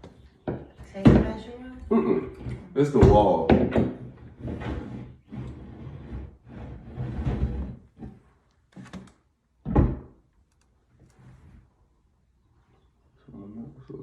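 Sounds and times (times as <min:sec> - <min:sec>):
objects rustling and scraping: 0:00.0 - 0:09.1, 0:10.9 - 0:12.0
small clicks: 0:10.4 - 0:11.2.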